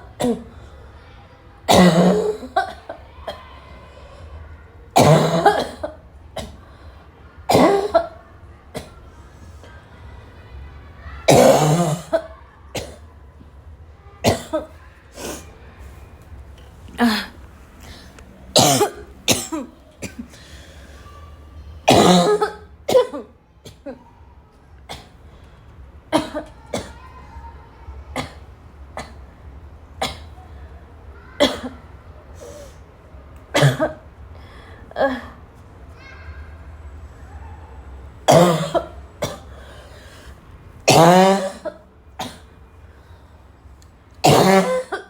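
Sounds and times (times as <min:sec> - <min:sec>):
girl coughing: 0:00.2 - 0:00.5, 0:01.7 - 0:03.4, 0:05.0 - 0:06.6, 0:07.5 - 0:08.2, 0:11.3 - 0:13.0, 0:14.2 - 0:15.4, 0:17.0 - 0:20.7, 0:21.9 - 0:24.0, 0:26.1 - 0:27.0, 0:30.0 - 0:30.3, 0:31.4 - 0:31.8, 0:33.5 - 0:34.0, 0:38.3 - 0:39.6, 0:40.9 - 0:42.5, 0:44.2 - 0:45.0.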